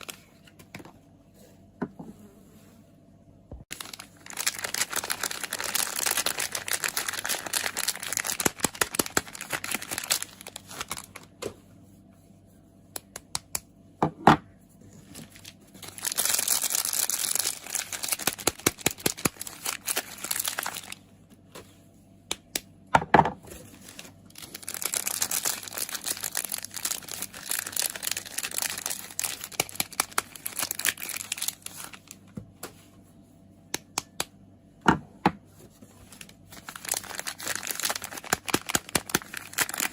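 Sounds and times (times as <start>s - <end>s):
packaging crinkling and tearing: 0.0s - 0.3s, 3.7s - 11.4s, 15.1s - 21.0s, 23.7s - 32.3s, 35.9s - 39.9s.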